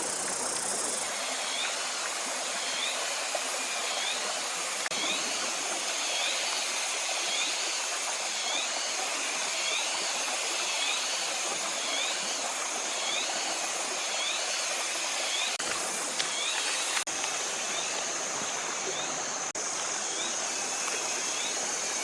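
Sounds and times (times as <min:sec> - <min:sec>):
steady rushing hiss: 0:00.0 - 0:02.4, 0:13.6 - 0:22.0.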